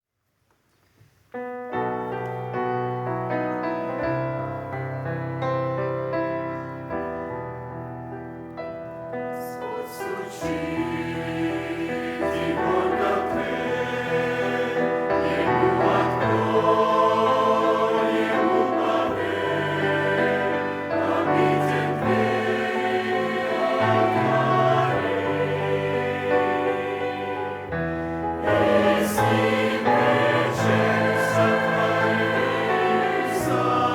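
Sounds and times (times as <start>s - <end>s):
choir singing a hymn: 8.8s - 33.9s.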